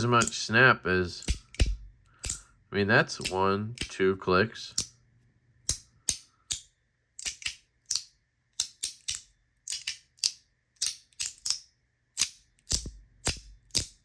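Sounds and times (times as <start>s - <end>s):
sharp metal slider clicks: 5.7s - 11.6s.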